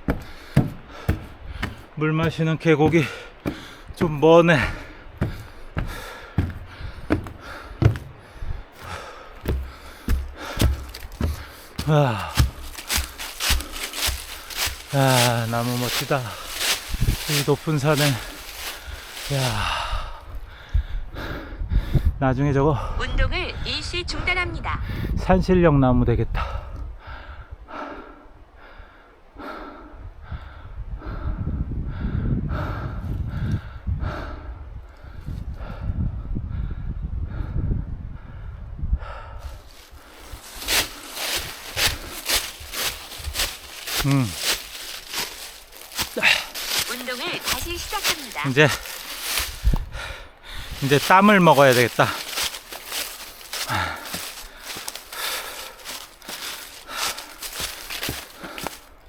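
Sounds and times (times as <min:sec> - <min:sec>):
man breathing hard: 0:00.0 - 0:01.8, 0:03.0 - 0:04.0, 0:04.6 - 0:17.3, 0:18.1 - 0:22.2, 0:26.4 - 0:46.8, 0:48.8 - 0:50.9, 0:52.0 - 0:59.0
footsteps on a mountain path: 0:00.0 - 0:20.6, 0:39.4 - 0:59.0.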